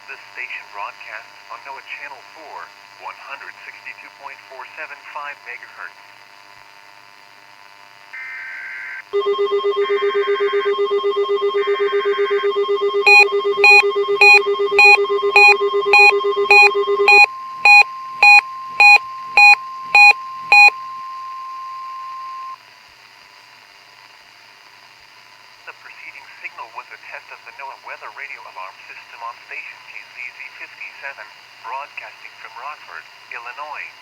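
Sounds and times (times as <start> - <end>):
loud buzzing alarm tone: 9.2 - 22.6
steady high tone: 9.2 - 22.6
sharp beeps: 11.8 - 22.6
screechy digital data bursts: 13.0 - 22.6.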